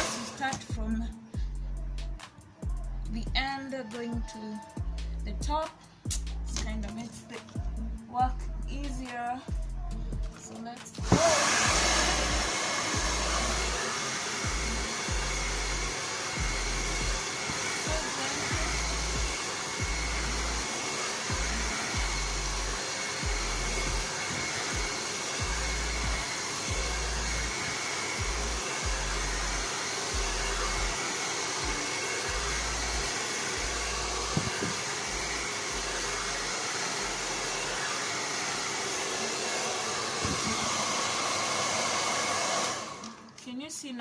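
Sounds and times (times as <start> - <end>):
blow dryer running: 0.0 - 0.9, 11.0 - 43.4.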